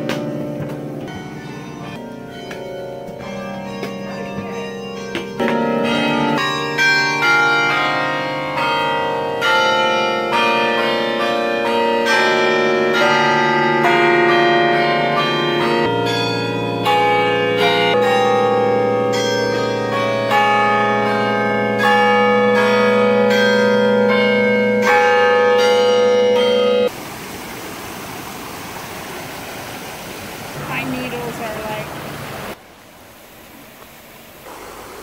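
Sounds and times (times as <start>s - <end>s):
deeper bell ringing: 0.0s - 26.9s
tower bells ringing a slow tune: 0.0s - 26.9s.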